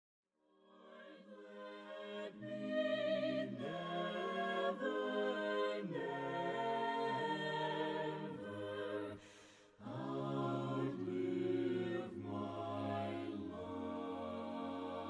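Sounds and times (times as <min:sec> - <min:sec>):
choir singing a hymn: 0:00.7 - 0:15.0.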